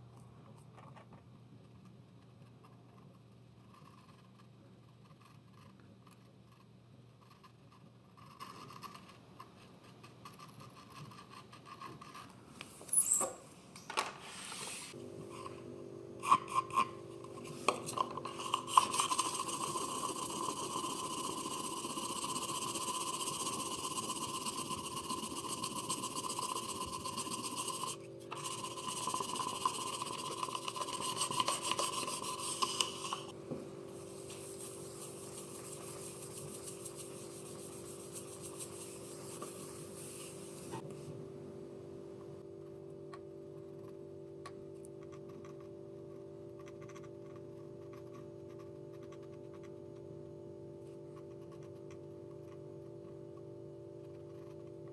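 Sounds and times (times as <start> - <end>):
rasping on ceramic tile: 16.2 - 33.4, 34.0 - 40.8.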